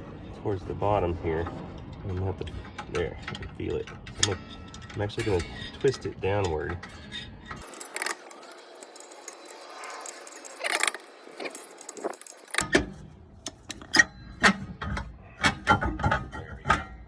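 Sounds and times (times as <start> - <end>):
metallic clicking of brake adjuster: 10.1 - 17.0.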